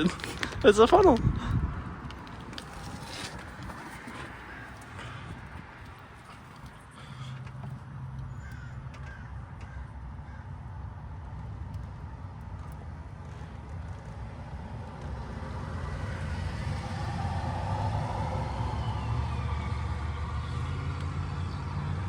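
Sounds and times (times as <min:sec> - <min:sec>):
passing vehicle: 0:00.0 - 0:22.0
traffic rumble: 0:00.0 - 0:22.0
harsh crow-like bird calls: 0:08.3 - 0:10.7.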